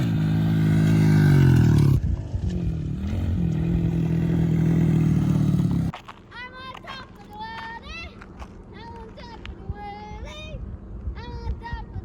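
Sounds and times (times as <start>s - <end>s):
small vehicle engine revving: 0.0s - 5.9s.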